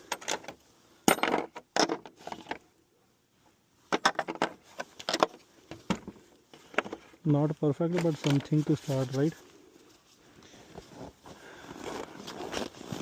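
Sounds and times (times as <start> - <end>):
metal tools clinking: 1.0 - 2.0.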